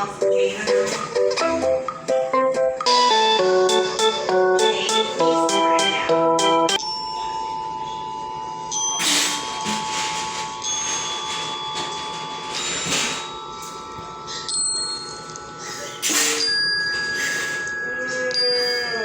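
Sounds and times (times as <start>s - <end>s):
ringing bell-like tones: 6.8s - 19.0s.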